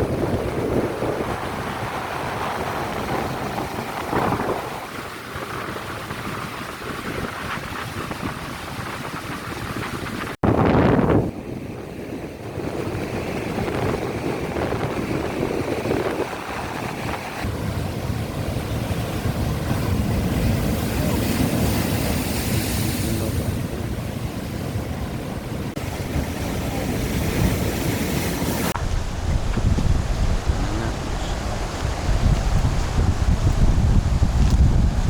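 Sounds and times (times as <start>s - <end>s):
sea surf rushing: 0.0s - 35.0s
wind buffeting microphone: 0.0s - 35.0s
heavy low rumble: 28.7s - 35.0s.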